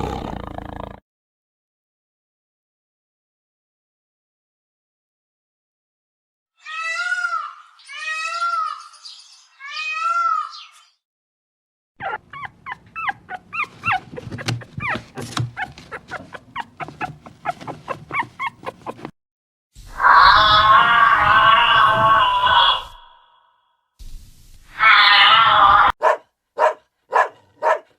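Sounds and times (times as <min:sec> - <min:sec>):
animal whining calls: 0:12.0 - 0:19.1
animal yelps: 0:12.0 - 0:19.1, 0:20.0 - 0:23.2, 0:24.8 - 0:27.8.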